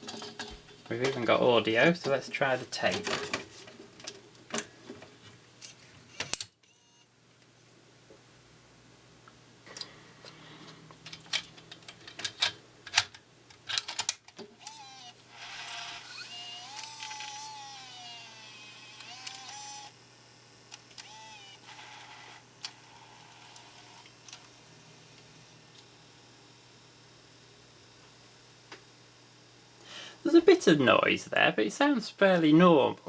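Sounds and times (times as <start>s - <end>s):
tape motors whining: 6.1s - 7.1s, 9.7s - 20.0s, 20.7s - 25.6s
cassette loading clicks and snaps: 10.9s - 15.2s, 16.1s - 19.9s.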